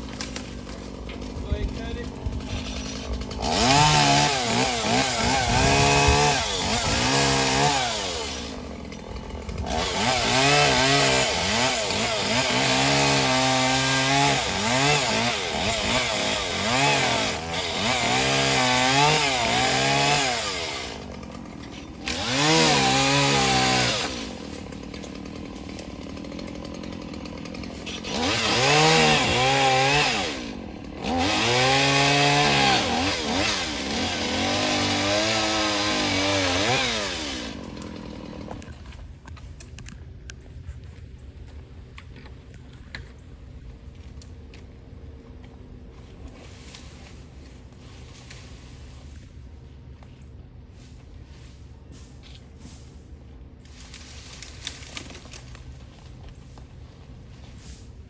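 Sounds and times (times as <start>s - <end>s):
chainsaw cutting wood: 0.0s - 39.4s, 53.7s - 56.7s.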